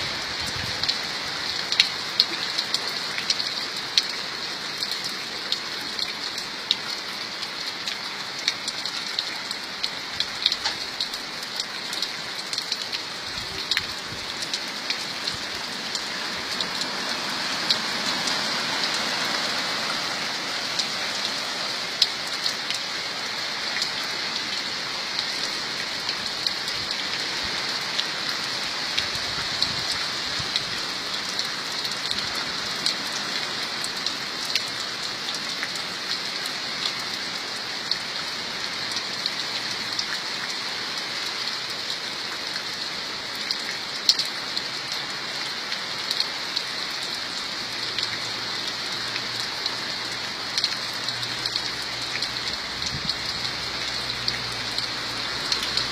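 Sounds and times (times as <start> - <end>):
raindrops ticking on a surface: 0.0 - 55.9
steady rain hiss: 0.0 - 55.9.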